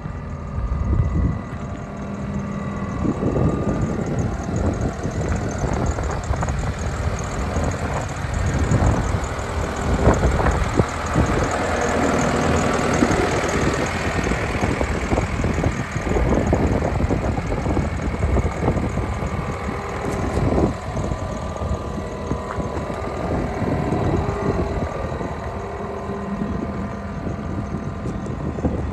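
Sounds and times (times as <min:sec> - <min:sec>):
diesel engine running: 0:00.0 - 0:28.9.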